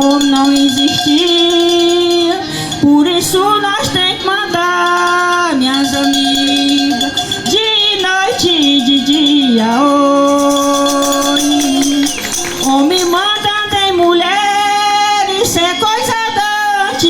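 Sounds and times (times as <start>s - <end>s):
musical accompaniment: 0.0s - 17.0s
person singing wordless call: 0.0s - 17.0s.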